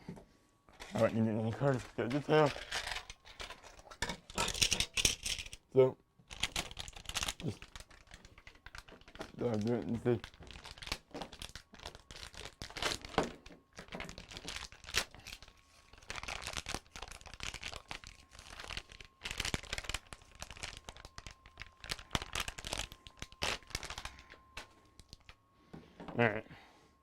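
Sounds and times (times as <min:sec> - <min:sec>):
plastic crinkling and rustling: 0:00.7 - 0:26.0
faint steady tone: 0:18.0 - 0:27.0.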